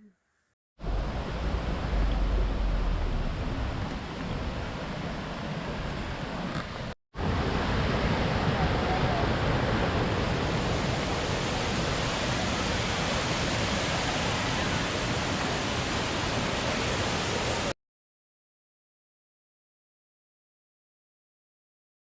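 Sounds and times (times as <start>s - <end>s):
waterfall rushing: 0.8s - 17.7s.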